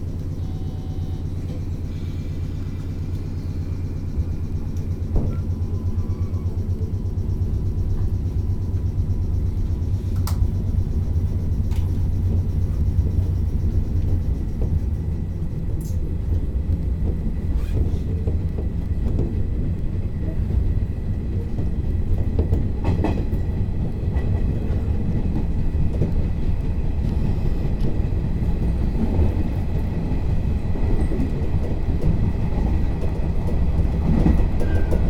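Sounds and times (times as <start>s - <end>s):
train wheels rumbling on rail: 0.0s - 35.0s.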